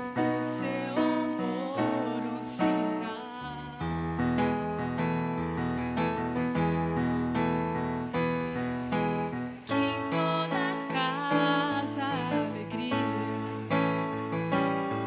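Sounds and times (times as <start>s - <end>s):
woman singing with vibrato: 0.0s - 4.1s, 9.7s - 14.0s
electric piano chords: 0.0s - 15.0s.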